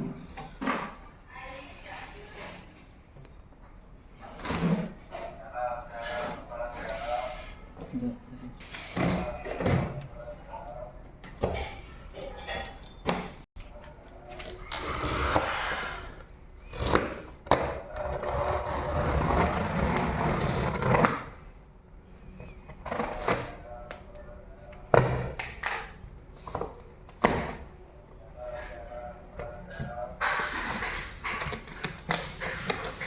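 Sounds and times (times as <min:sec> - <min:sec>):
scraping and rustling packaging: 0:28.3 - 0:33.0.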